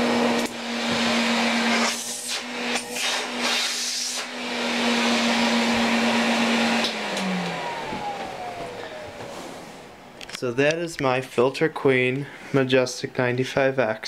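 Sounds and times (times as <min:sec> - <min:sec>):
motor winding down whine: 0:00.0 - 0:10.0
vacuum cleaner running: 0:00.0 - 0:10.2.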